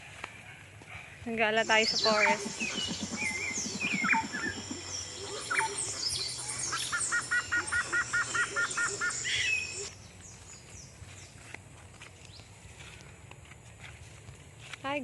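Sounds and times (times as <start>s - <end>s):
wild birds chirping: 1.5s - 11.3s
bird fast run of short notes: 1.6s - 9.7s.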